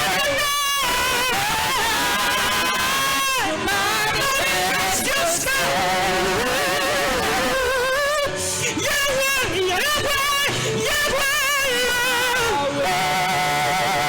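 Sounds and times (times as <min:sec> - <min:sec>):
worship singing: 0:00.0 - 0:14.0.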